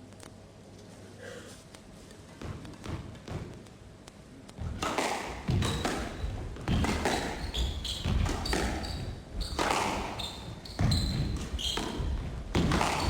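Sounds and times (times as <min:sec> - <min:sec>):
ball hitting court walls: 0:04.6 - 0:13.0
shoes squeaking on court floor: 0:04.6 - 0:13.0
squash ball struck by rackets: 0:04.6 - 0:13.0.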